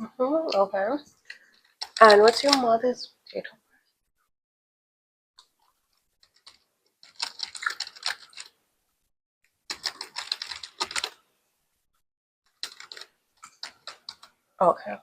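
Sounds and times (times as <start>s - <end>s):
keyboard typing: 1.8s - 2.8s, 6.2s - 8.6s, 9.7s - 11.2s, 12.5s - 14.4s.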